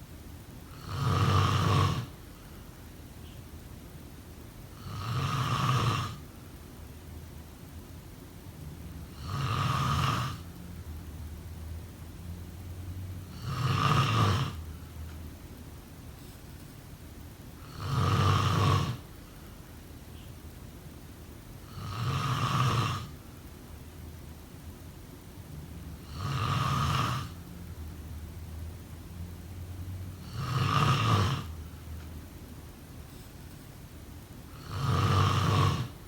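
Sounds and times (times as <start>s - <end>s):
person snoring: 0.7s - 2.2s, 4.8s - 6.2s, 9.1s - 10.5s, 13.3s - 14.7s, 17.6s - 19.0s, 21.6s - 23.1s, 26.0s - 27.4s, 30.2s - 31.6s, 34.5s - 36.0s.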